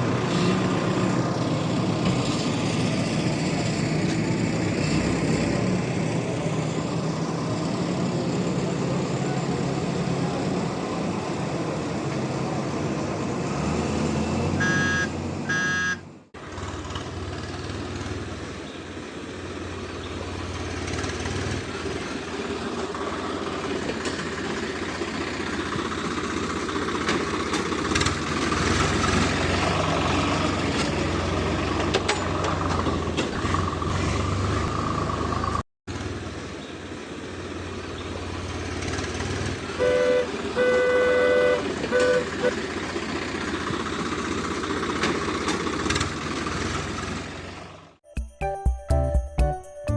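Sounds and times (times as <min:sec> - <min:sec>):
vehicle engine rumble: 0:00.0 - 0:48.0
horn toots: 0:14.6 - 0:16.0, 0:39.8 - 0:42.6.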